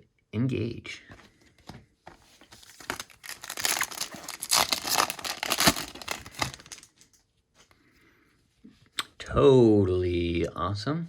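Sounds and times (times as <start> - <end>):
foil wrapper crinkling and tearing: 2.6 - 7.0.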